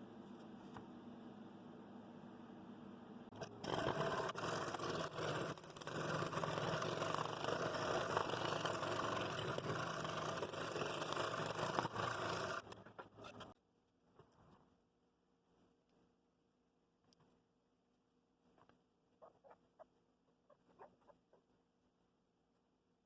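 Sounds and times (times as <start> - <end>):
power tool whirring on wood: 3.4 - 12.8.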